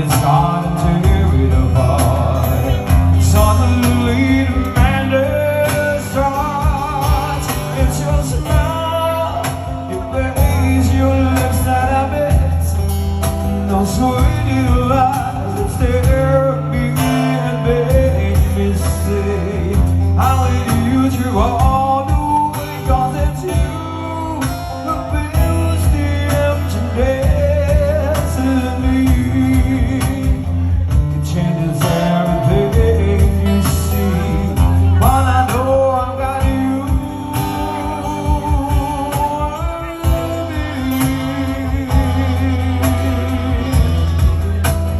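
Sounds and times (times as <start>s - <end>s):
acoustic band music: 0.0s - 44.9s
person singing: 0.0s - 44.9s.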